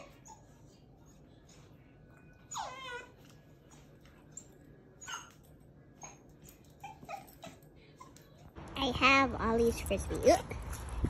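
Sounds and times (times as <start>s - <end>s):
dog whimpering: 0.0s - 8.4s
dog whining: 0.0s - 8.4s.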